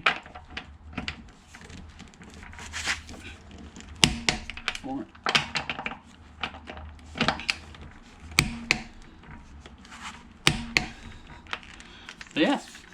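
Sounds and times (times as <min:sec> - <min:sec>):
sharp knocks and clicks: 0:00.0 - 0:12.9.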